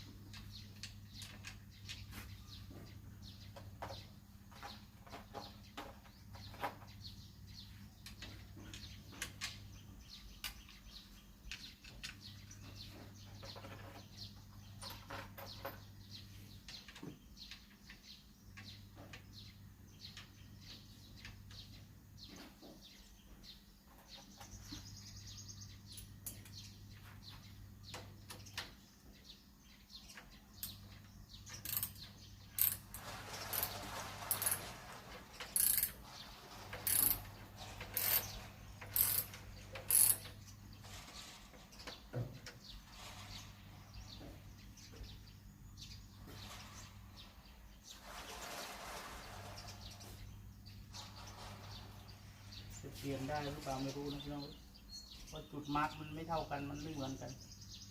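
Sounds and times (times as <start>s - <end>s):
birds chirping: 0.0s - 57.9s
ratchet clicking: 31.6s - 32.0s, 32.6s - 33.7s, 34.3s - 34.7s, 35.5s - 36.0s, 36.8s - 37.3s, 37.9s - 40.4s.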